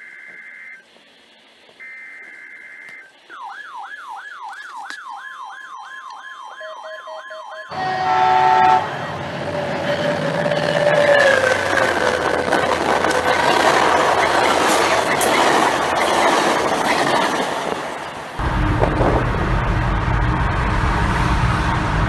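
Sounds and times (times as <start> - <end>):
electronic siren tone sweeping: 1.8 - 15.6
blast of steady tones: 1.8 - 16.8, 18.0 - 22.0
harsh warbling data tone: 1.8 - 17.4
noisy rumble: 7.7 - 16.0, 17.8 - 22.0.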